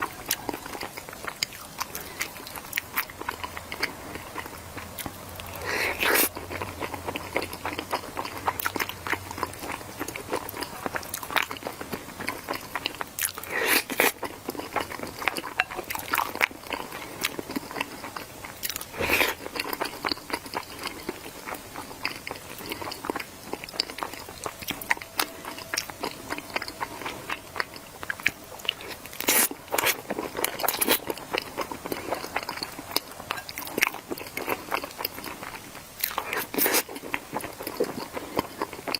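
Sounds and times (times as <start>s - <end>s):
chewing with crunchy bites: 0.0s - 38.9s.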